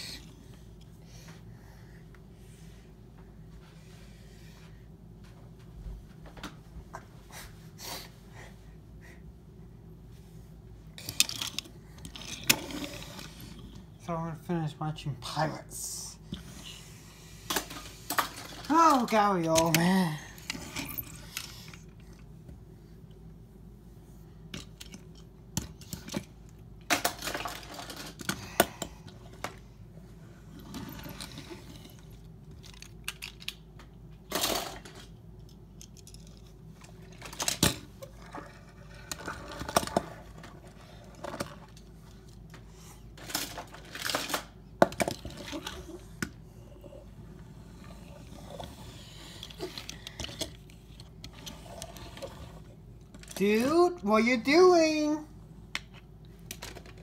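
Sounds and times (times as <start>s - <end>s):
toy cars clattering: 11.0s - 13.7s, 17.5s - 22.0s, 26.9s - 29.6s, 30.6s - 33.6s, 34.3s - 42.5s, 43.2s - 46.0s.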